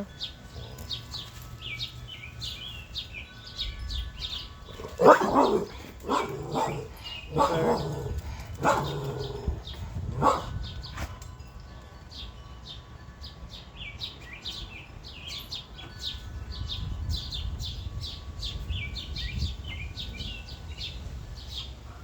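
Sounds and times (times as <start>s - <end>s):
small birds chirping: 0.0s - 22.0s
dog barking: 5.0s - 9.3s, 10.2s - 10.6s.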